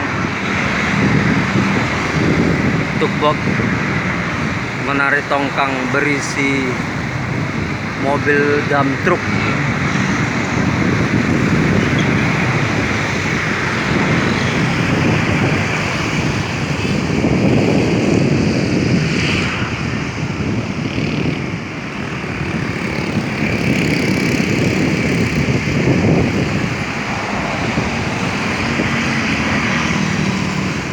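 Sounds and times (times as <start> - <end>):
river water washing: 0.0 - 17.6, 20.9 - 30.9
boat engine drone: 0.0 - 30.9
wind rumbling on microphone: 0.0 - 30.9.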